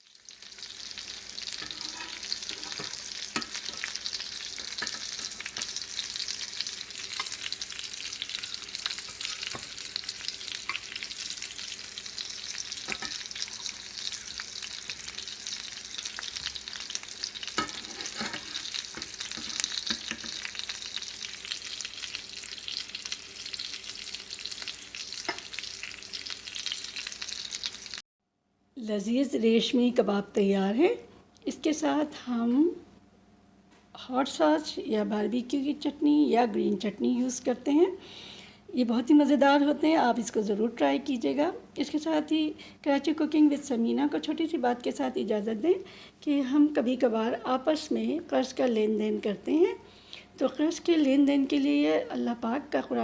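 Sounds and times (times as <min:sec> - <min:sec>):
meat sizzling in oil: 0:00.0 - 0:28.0.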